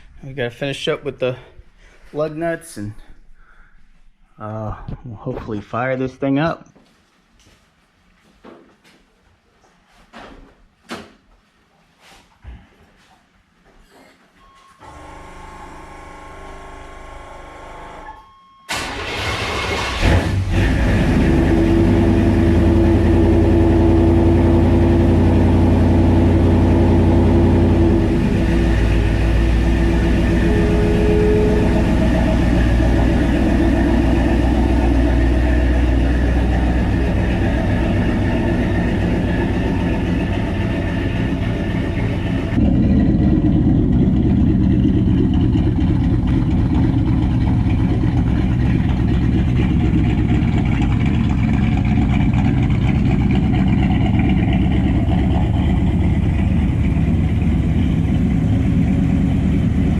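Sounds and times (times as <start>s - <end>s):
pickup engine idling: 22.0s - 59.9s.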